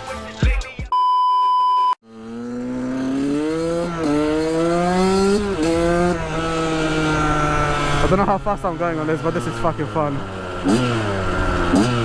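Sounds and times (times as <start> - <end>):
high beep: 0.9 - 2.0
two-stroke engine accelerating: 2.0 - 12.0.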